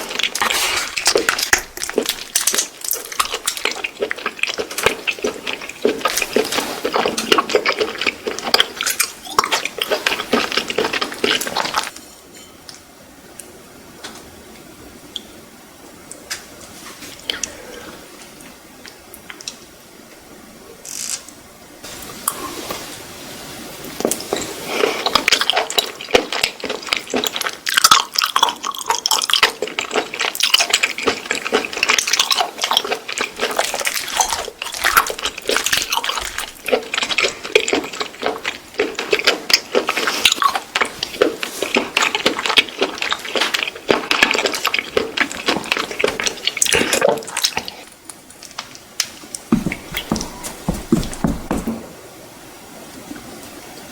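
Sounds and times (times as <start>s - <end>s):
wet chewing and slurping: 0.0s - 12.0s, 24.0s - 51.7s.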